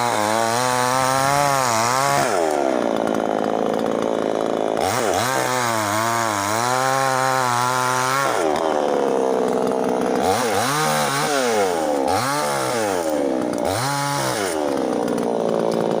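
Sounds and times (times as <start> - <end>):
chainsaw revving: 0.0 - 16.0.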